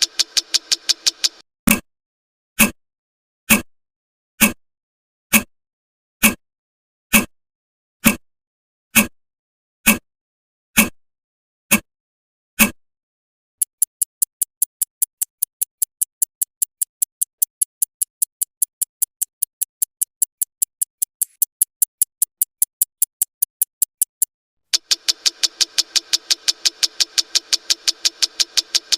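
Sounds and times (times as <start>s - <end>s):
fast high-pitched ticking: 0.0s - 1.4s, 13.6s - 28.9s
clock ticking: 0.0s - 1.8s, 13.6s - 28.9s.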